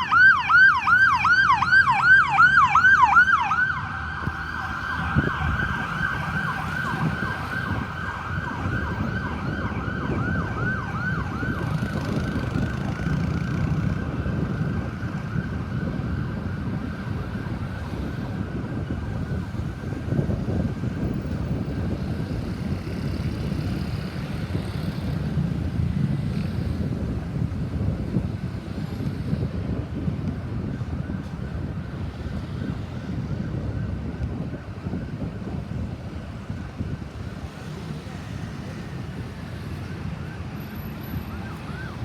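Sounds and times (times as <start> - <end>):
ambulance siren yelping: 0.0 - 21.4, 38.4 - 42.0
road traffic rumble: 0.0 - 42.0.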